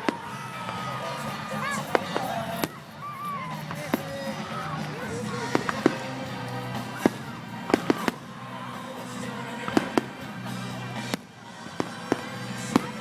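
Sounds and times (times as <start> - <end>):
firecrackers banging: 0.0 - 8.3
background music: 0.0 - 13.0.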